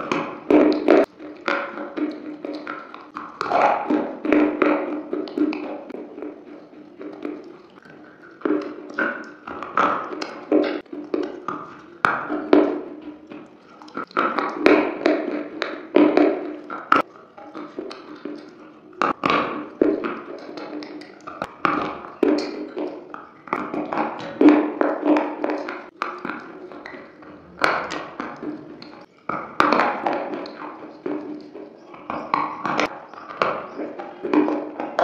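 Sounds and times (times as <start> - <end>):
crunchy chewing: 0.0 - 35.0.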